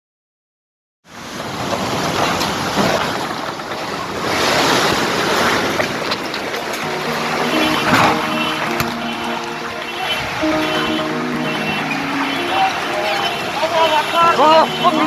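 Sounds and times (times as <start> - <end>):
heavy rain pouring: 4.1 - 15.0.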